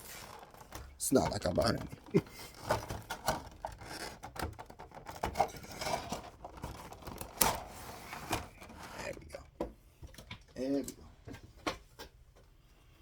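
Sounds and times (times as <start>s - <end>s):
packaging being handled and opened: 0.0s - 9.3s.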